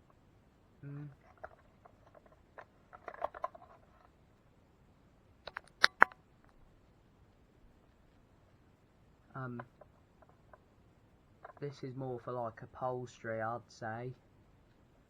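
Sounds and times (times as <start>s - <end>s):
plastic taps and rattles: 1.2s - 4.1s, 5.5s - 6.2s, 11.4s - 11.6s
sharp plastic clicks: 5.4s - 6.2s.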